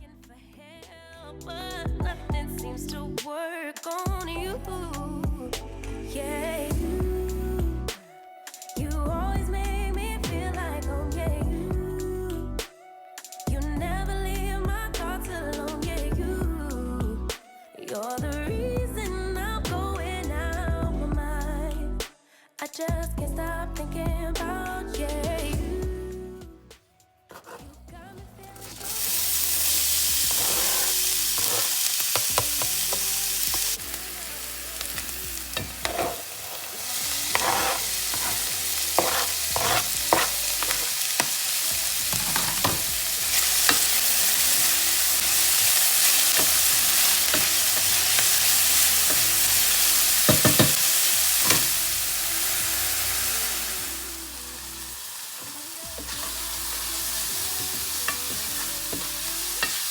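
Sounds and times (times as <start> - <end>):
food sizzling in a pan: 28.6 - 59.9
utensil scraping a pan: 30.0 - 33.6, 35.6 - 41.4, 42.1 - 44.2.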